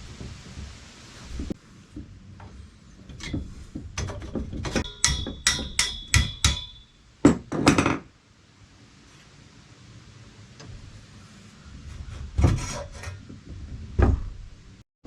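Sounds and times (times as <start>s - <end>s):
hammer blows on metal: 4.8s - 7.0s.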